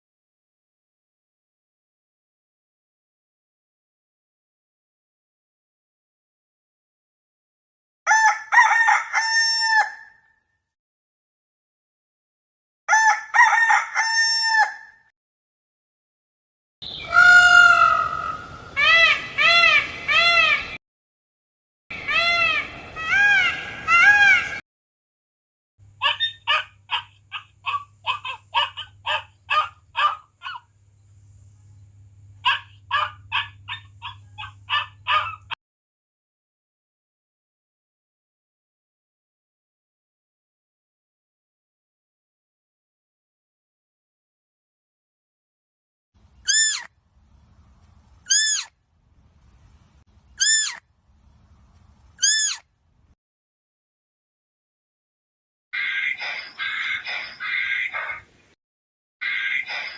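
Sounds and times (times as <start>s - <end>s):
bird calling rapid notes: 16.8s - 20.8s, 46.4s - 46.9s, 48.3s - 48.7s, 50.3s - 50.8s, 52.2s - 52.6s
animal squealing call: 17.0s - 20.8s, 22.0s - 24.6s, 26.0s - 30.6s, 32.4s - 35.6s, 46.4s - 46.9s, 48.3s - 48.7s, 50.4s - 50.8s, 52.2s - 52.6s, 55.8s - 58.3s, 59.2s - 59.9s.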